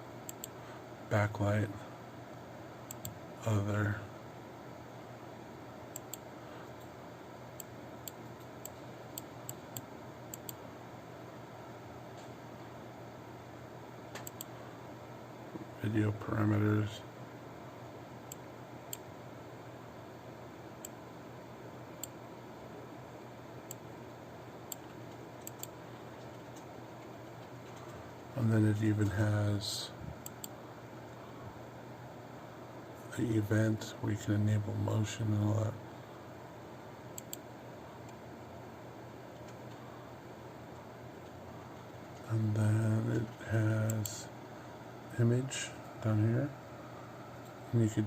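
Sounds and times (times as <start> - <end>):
faint low hum: 0.0 - 48.0
computer mouse clicking: 0.3 - 0.6, 2.9 - 3.2, 5.9 - 6.9, 7.6 - 10.6, 14.1 - 14.5, 18.2 - 19.1, 22.0 - 22.2, 24.7 - 27.9, 30.2 - 30.6, 37.1 - 37.4.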